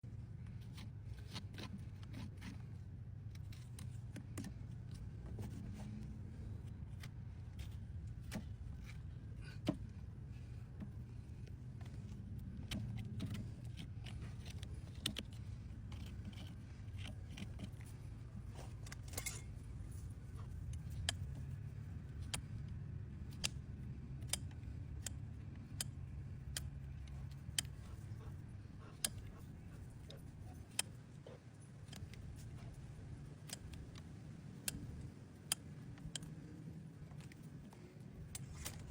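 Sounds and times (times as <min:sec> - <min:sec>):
low steady hum: 0:00.0 - 0:38.9
hoof-trimming tools snipping: 0:11.7 - 0:38.9.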